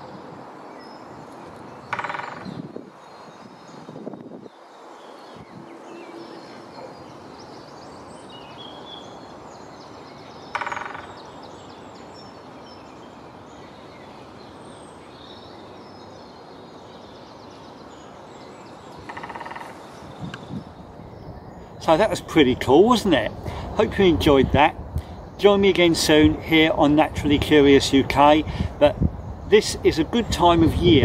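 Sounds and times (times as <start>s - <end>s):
small birds singing faintly: 0.0s - 31.0s
steady background hiss: 0.0s - 31.0s
woodpecker drumming on wood: 1.8s - 2.6s, 10.4s - 11.4s, 18.9s - 20.0s.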